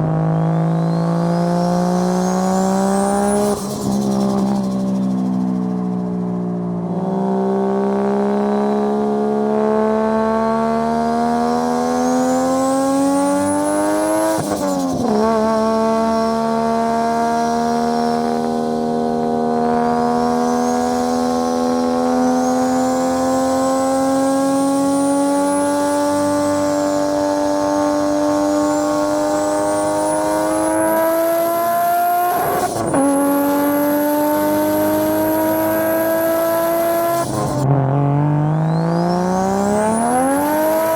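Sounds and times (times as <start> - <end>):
racing car engine accelerating: 0.0 - 40.9
turbo whistle: 0.2 - 6.1, 38.5 - 40.9.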